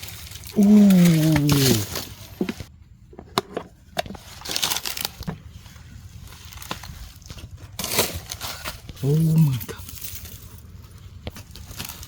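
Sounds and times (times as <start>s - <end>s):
dry leaves and twigs rustling: 0.0s - 2.7s, 3.7s - 12.0s
twigs snapping: 0.0s - 2.7s.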